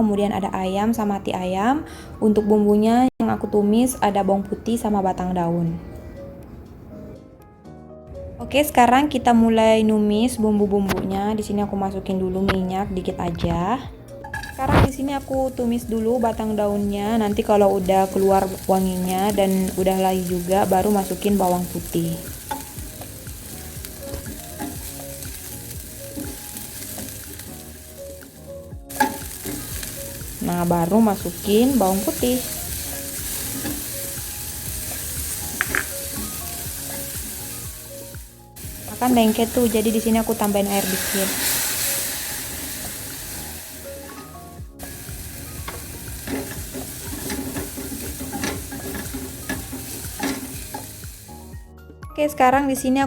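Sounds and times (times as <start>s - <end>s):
onions sizzling in hot oil: 14.4s - 51.6s
utensil scraping against pan: 45.7s - 51.0s.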